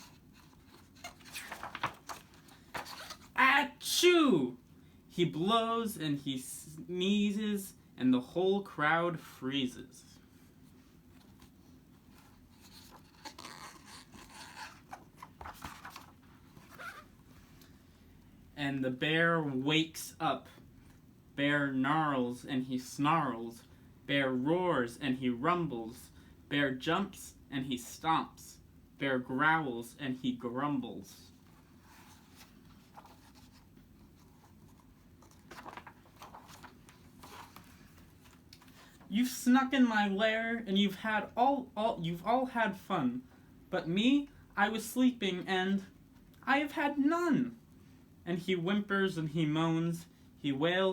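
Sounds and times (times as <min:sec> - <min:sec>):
book pages rustling and turning: 0:00.0 - 0:03.4, 0:11.0 - 0:17.7, 0:31.4 - 0:39.1
low room hum: 0:00.0 - 0:50.9.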